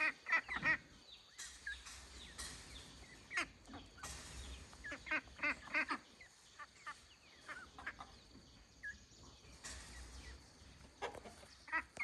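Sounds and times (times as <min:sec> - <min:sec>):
ducks quacking: 0:00.0 - 0:01.9, 0:03.0 - 0:09.0, 0:10.3 - 0:12.0.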